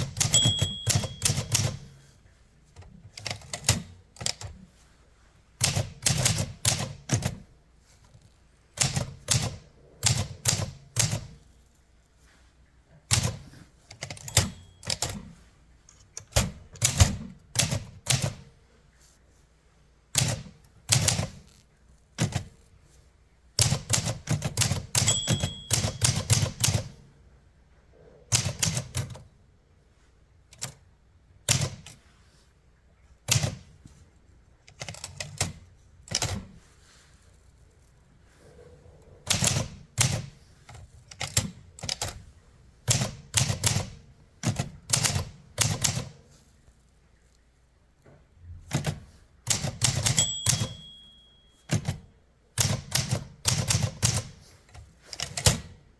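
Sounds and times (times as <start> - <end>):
typewriter bell ding: 0.0 - 2.0, 14.0 - 15.3, 24.1 - 26.9, 49.6 - 52.0
typewriter key strikes: 0.0 - 2.0, 5.6 - 7.4, 8.8 - 11.4, 13.1 - 15.3, 16.2 - 18.5, 20.2 - 21.5, 23.6 - 27.0, 28.3 - 29.2, 31.5 - 32.0, 34.7 - 36.5, 39.3 - 40.3, 42.9 - 46.1, 48.7 - 52.0, 52.6 - 54.4.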